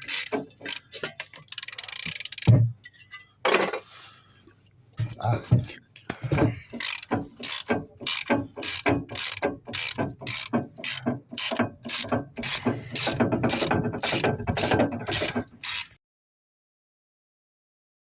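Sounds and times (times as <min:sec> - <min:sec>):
ratchet wrench ratcheting: 0:00.0 - 0:02.5, 0:06.7 - 0:16.0.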